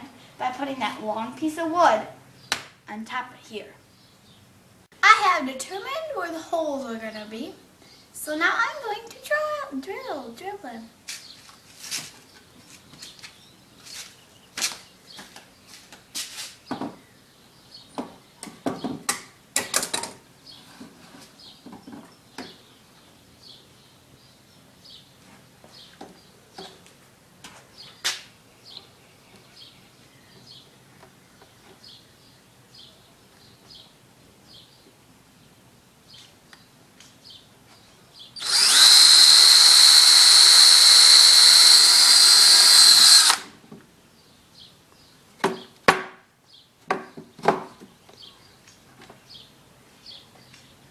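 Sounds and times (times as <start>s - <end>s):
wood and tools knocking: 16.7s - 17.0s, 18.0s - 20.2s, 46.9s - 47.9s
cordless drill drilling wood: 38.4s - 43.5s.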